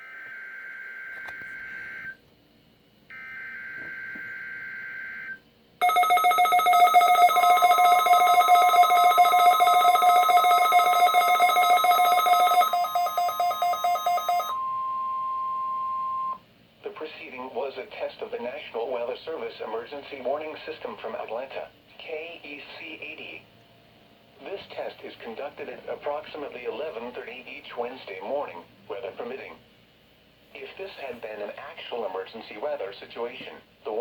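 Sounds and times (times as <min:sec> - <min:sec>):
steady warning alarm tone: 0:03.1 - 0:16.4
rapidly pulsing alert beeps: 0:05.8 - 0:14.6.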